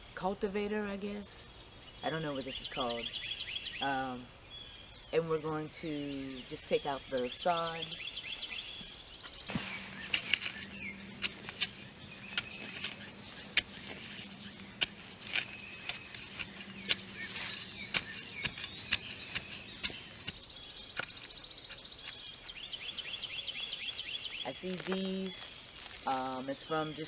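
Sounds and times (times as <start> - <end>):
birds chirping: 0.0 - 27.0
cultivator chopping into soil: 9.2 - 22.6.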